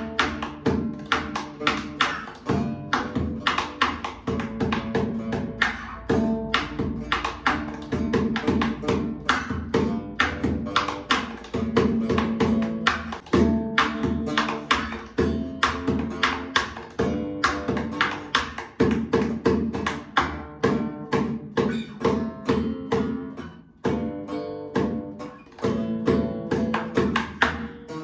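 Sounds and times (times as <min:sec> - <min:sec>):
acoustic guitar strumming: 0:00.0 - 0:28.0.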